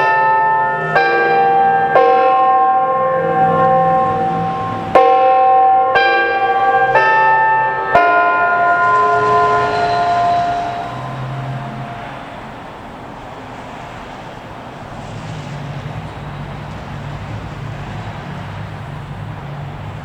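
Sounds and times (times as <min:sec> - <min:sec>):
siren chime note: 0:00.0 - 0:12.8
cars passing: 0:00.0 - 0:20.0.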